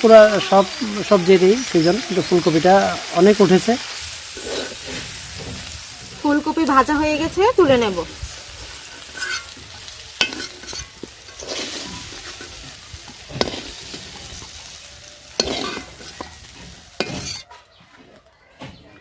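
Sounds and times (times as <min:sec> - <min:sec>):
food sizzling in hot oil: 0:00.0 - 0:17.5
spatula scraping and knocking pan: 0:08.7 - 0:14.7, 0:15.4 - 0:17.6.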